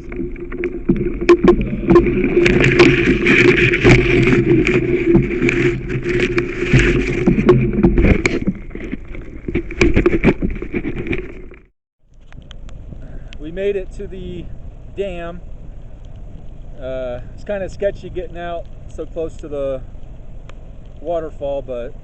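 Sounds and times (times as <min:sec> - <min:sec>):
steady rushing water: 0:00.0 - 0:10.4
water splashing around canoe: 0:00.0 - 0:11.7.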